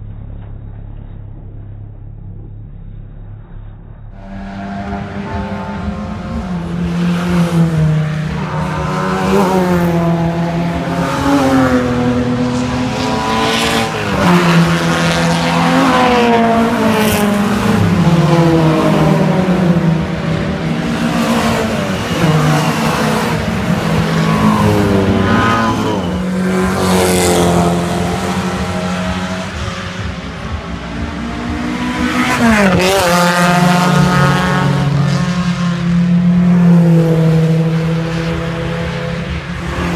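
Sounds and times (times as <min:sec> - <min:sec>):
racing car engines passing: 0:02.4 - 0:39.9.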